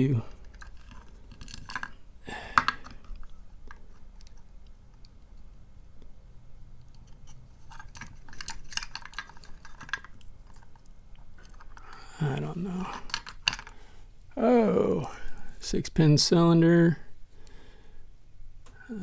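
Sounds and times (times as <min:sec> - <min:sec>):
small metal clicks and scrapes: 0:00.2 - 0:02.0, 0:06.8 - 0:12.0, 0:12.8 - 0:13.8.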